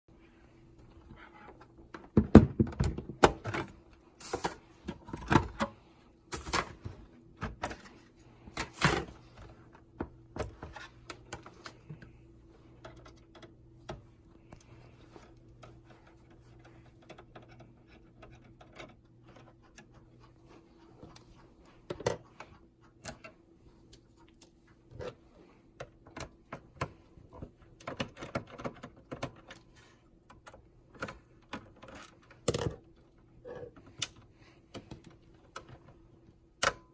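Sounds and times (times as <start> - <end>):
plastic and metal parts knocking: 2.0 - 3.6.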